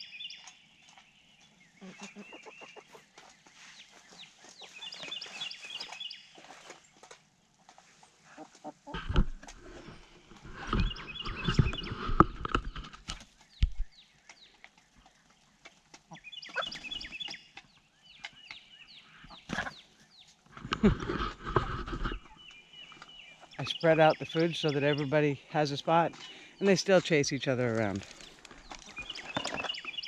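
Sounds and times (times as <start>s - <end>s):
hens clucking: 0.9s - 27.1s
rustling: 1.8s - 17.4s, 26.1s - 30.0s.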